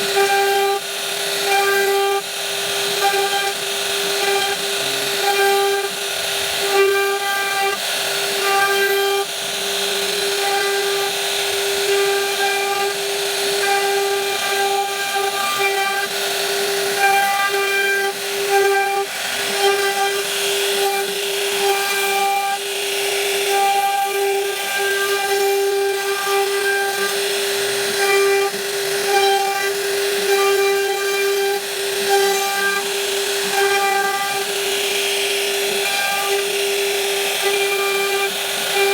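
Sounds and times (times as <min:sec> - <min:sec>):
hissing wood cutting: 0:00.0 - 0:38.9
router spindle humming: 0:00.0 - 0:38.9.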